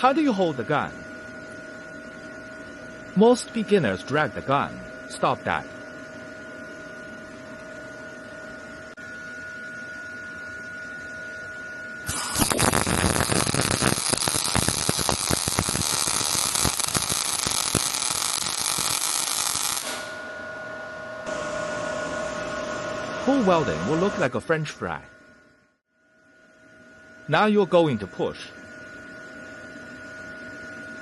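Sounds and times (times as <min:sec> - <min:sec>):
steady electrical hum: 0:00.0 - 0:31.0
welding arc crackling and popping: 0:12.1 - 0:20.2.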